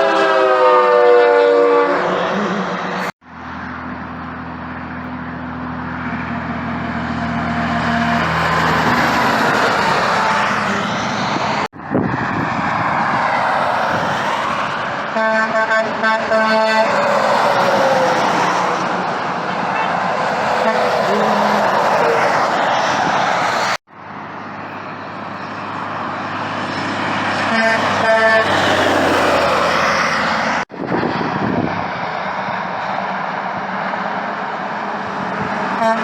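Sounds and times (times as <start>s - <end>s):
truck air horn chord: 0.0s - 2.8s, 6.4s - 9.0s, 15.2s - 17.0s, 27.5s - 28.6s, 35.8s - 36.0s
diesel engine drone: 0.0s - 36.0s
road noise: 0.0s - 36.0s.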